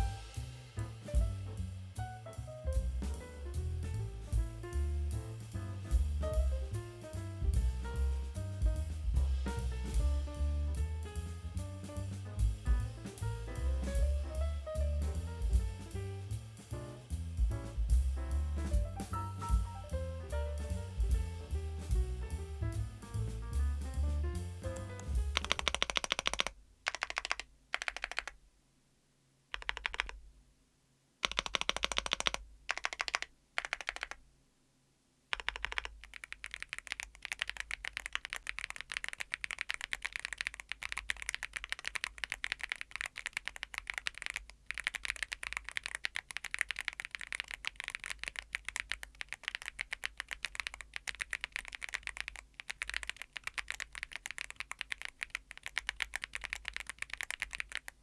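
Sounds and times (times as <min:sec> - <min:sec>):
keyboard keys pressed rapidly: 0:23.8 - 0:28.4, 0:29.5 - 0:30.2, 0:31.2 - 0:34.2, 0:35.3 - 0:58.0
mechanical keyboard typing: 0:25.4 - 0:28.4, 0:29.5 - 0:30.2, 0:31.2 - 0:34.2, 0:35.3 - 0:58.0.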